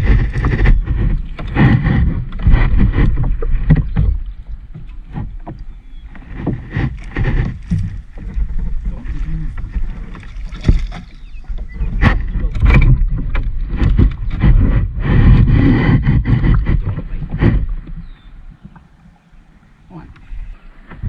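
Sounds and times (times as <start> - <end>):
kayak paddle splashing water: 0.0 - 21.0.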